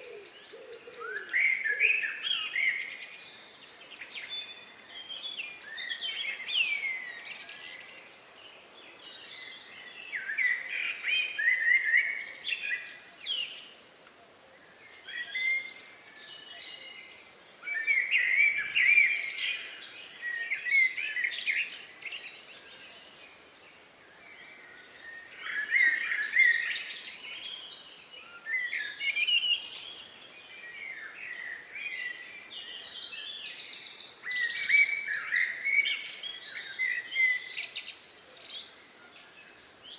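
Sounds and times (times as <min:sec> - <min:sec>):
songbirds chirping and whistling: 0:24.2 - 0:39.9.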